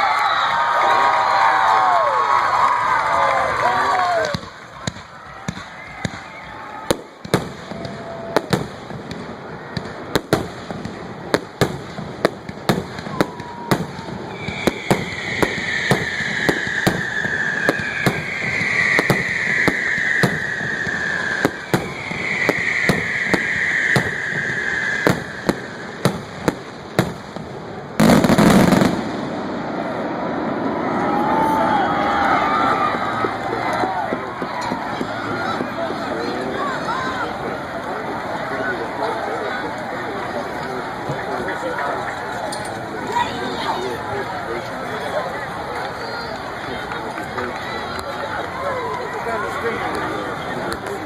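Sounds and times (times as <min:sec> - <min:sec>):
fireworks cracking and popping: 0:04.0 - 0:29.6, 0:32.6 - 0:36.2, 0:45.7 - 0:51.0
loud firework blast: 0:04.2 - 0:36.1
falling firework whistles: 0:13.0 - 0:27.2.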